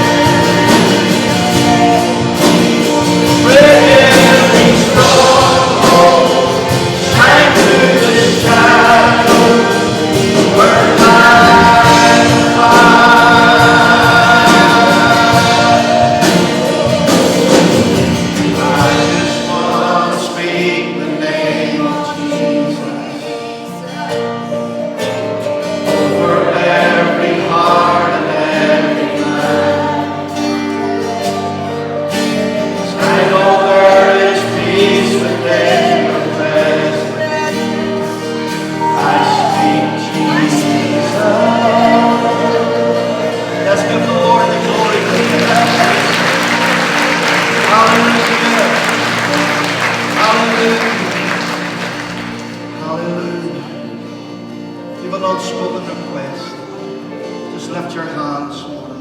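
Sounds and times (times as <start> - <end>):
congregation singing worship song: 0.0 - 59.0.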